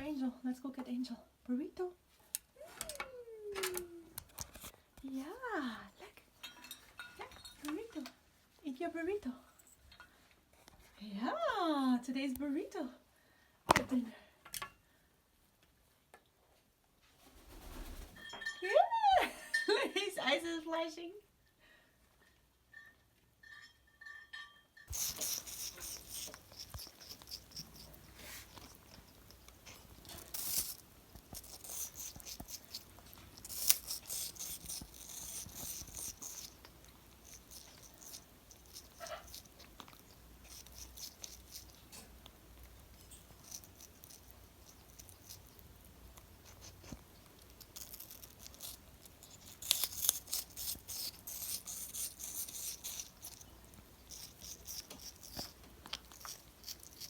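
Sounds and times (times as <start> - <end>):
parrot beak crunching food: 24.9 - 57.0.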